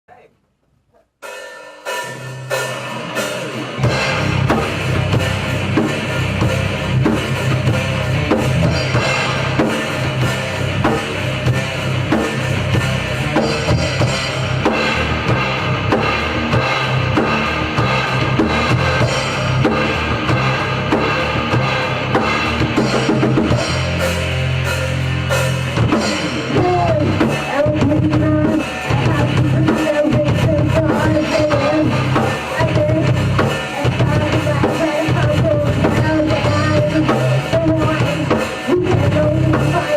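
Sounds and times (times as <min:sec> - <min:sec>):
cymbals: 0:01.2 - 0:27.6
rock band playing live: 0:01.2 - 0:39.9
heavy bass line: 0:01.9 - 0:39.9
bass drum: 0:02.0 - 0:39.9.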